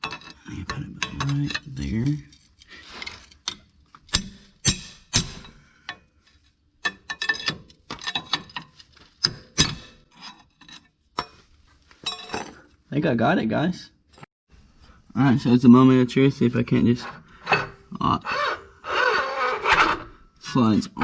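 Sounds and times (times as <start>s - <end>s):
metal tools clinking and knocking: 0.0s - 4.8s, 6.8s - 12.7s
metal scrape: 1.2s - 5.6s, 17.0s - 20.3s.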